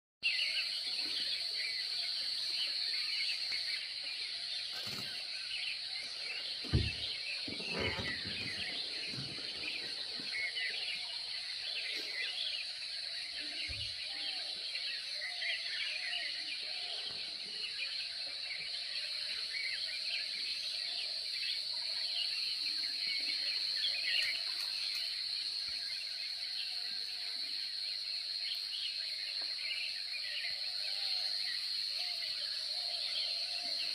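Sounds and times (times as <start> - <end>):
low thumps: 6.6 - 9.6.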